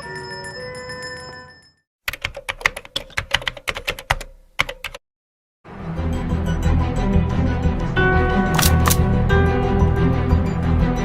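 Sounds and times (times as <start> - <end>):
sharp clicks: 8.6 - 9.0.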